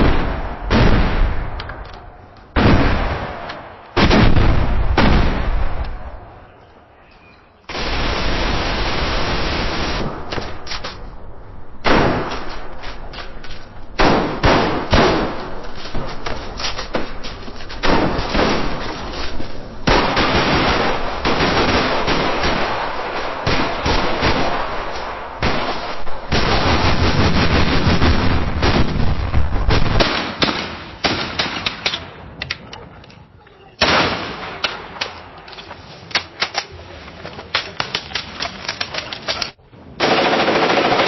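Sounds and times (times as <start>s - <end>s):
continuous gunfire volleys: 14.0s - 16.3s, 19.8s - 32.1s, 37.8s - 41.0s.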